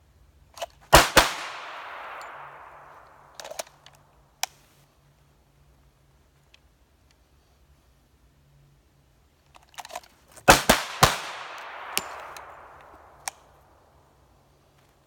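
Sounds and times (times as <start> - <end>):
gunshot echo: 1.0 - 3.4, 10.5 - 13.3
pistol shots: 1.0 - 3.6, 10.5 - 13.4.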